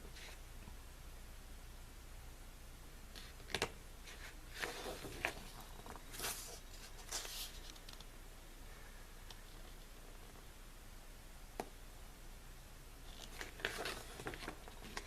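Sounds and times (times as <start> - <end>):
paper pages rustling and flipping: 3.2 - 8.1, 13.1 - 15.0.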